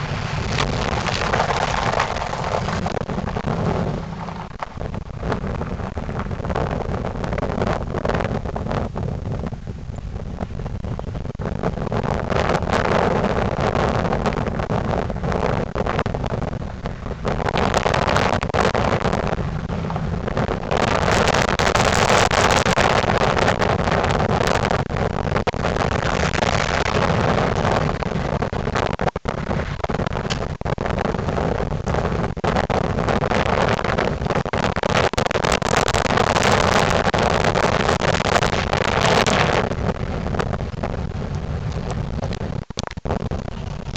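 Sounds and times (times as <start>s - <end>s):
car engine with exhaust leak: 0.0s - 30.5s
wind on microphone: 0.0s - 43.9s.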